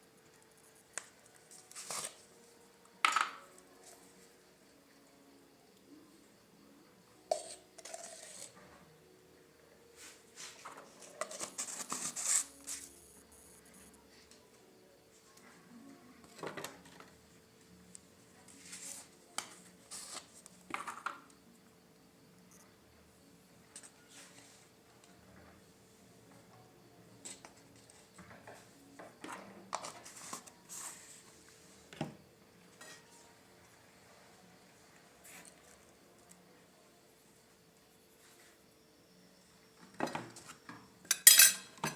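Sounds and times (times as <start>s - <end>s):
sharp clink with short ring: 41.1s - 41.7s.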